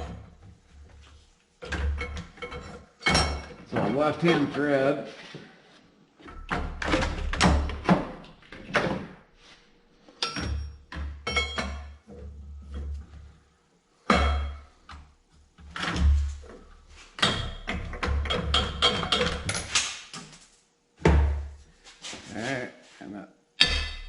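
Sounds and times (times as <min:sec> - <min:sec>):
metal knocks and clanks: 0:17.2 - 0:19.8, 0:23.6 - 0:24.0.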